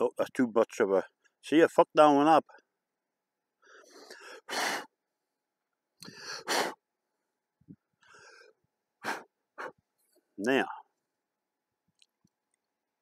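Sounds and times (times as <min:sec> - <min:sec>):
man breathy exhalations: 0:03.6 - 0:04.9, 0:06.0 - 0:06.8
man sniffing: 0:03.7 - 0:05.0, 0:06.0 - 0:06.8, 0:09.0 - 0:09.8.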